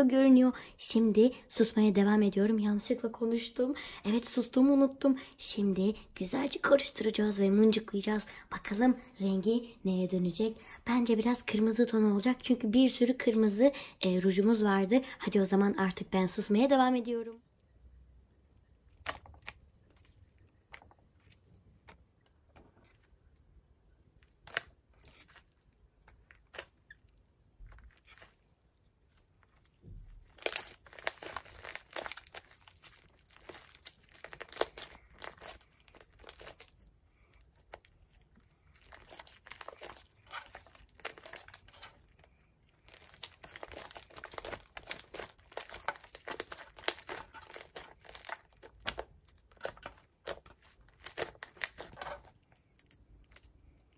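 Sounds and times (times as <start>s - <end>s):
hands squishing slime: 29.1s - 53.9s.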